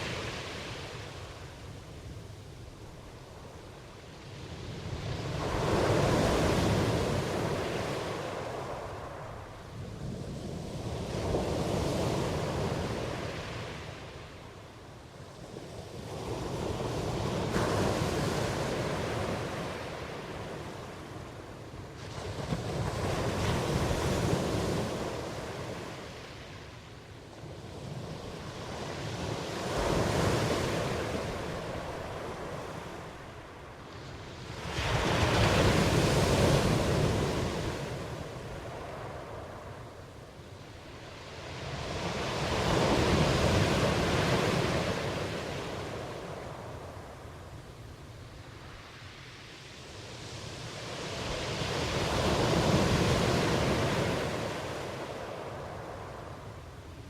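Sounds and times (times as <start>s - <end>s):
ocean waves washing in: 27.8s - 57.0s.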